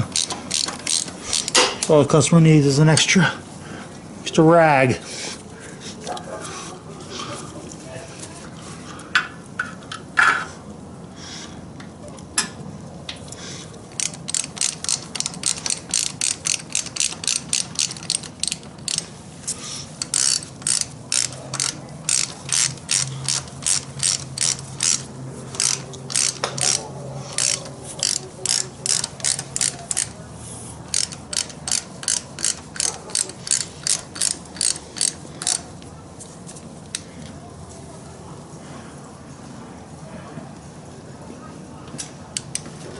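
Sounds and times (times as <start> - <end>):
ratchet wrench clicking: 0.0 - 1.9, 13.9 - 30.2, 30.8 - 35.7.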